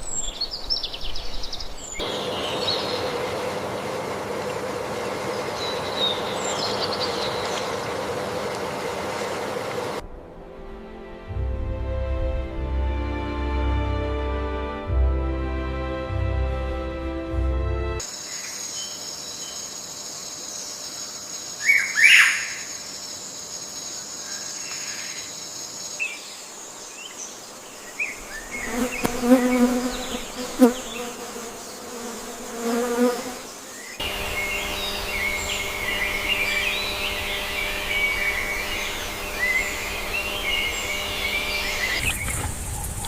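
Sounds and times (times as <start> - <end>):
bird chirping: 0.0 - 8.5, 18.1 - 32.0, 33.4 - 43.0
loud sweeping bird call: 0.0 - 10.0, 21.6 - 22.9, 33.5 - 43.0
high insect buzz: 18.0 - 43.0
low hum: 34.0 - 43.0.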